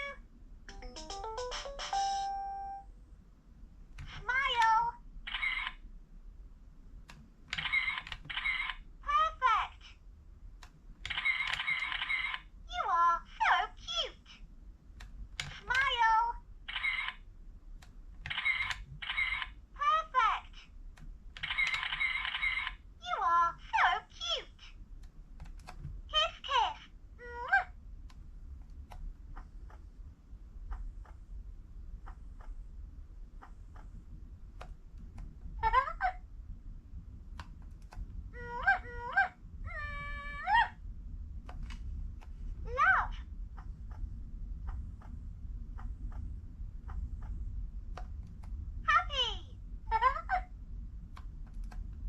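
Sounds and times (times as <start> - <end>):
toy phone electronic sound effects: 0.7 - 2.8, 5.3 - 5.8, 7.6 - 8.8, 11.1 - 12.4, 16.7 - 17.2, 18.3 - 19.5, 21.4 - 22.8
toy phone voice clips: 4.0 - 5.8, 15.4 - 17.2, 18.3 - 20.6
faint clicks: 51.0 - 52.0.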